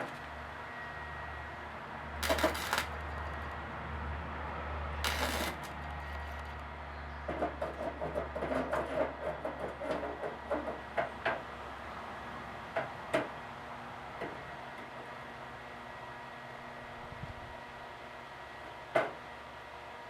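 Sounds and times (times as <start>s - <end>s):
welder crackling: 0.0s - 0.4s, 2.2s - 3.6s, 5.0s - 6.6s.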